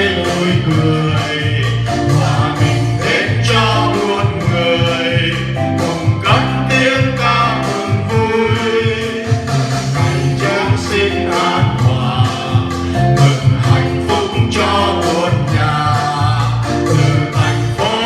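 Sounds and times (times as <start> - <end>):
singing over instrumental backing: 0.0 - 18.0.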